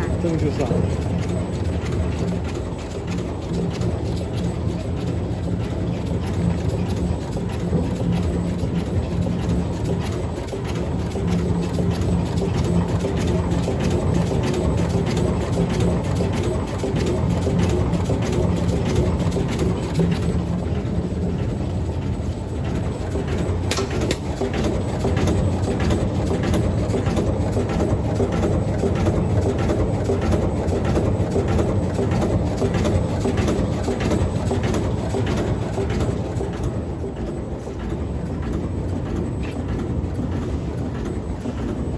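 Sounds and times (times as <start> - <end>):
fast regular machine clatter: 0.0 - 41.9
machine mechanical hum: 0.0 - 41.9
sharp click: 23.7 - 24.2.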